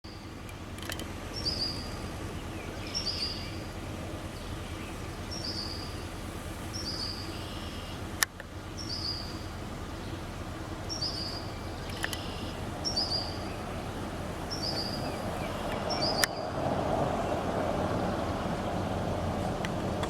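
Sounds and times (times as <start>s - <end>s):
bird two-part call: 6.8s - 8.0s, 10.9s - 13.7s
sharp click: 11.8s - 12.3s
outdoor rushing noise: 12.6s - 20.0s.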